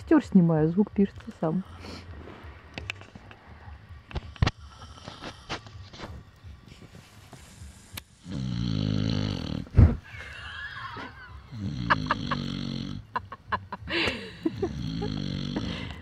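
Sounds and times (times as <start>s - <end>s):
campfire crackling: 1.2s - 16.0s
man snoring: 4.3s - 5.8s, 7.4s - 16.0s
loud thump: 9.7s - 10.0s.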